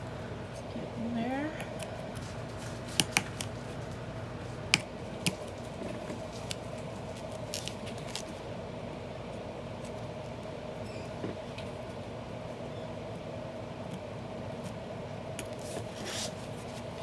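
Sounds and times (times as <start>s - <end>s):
steady low hum: 0.0s - 17.0s
book binding clicking and snapping: 2.8s - 3.5s.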